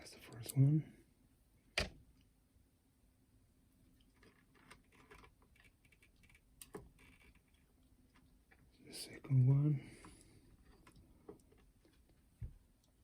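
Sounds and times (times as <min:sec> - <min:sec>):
faint clicks and rustles: 0:03.9 - 0:08.8, 0:09.9 - 0:13.0.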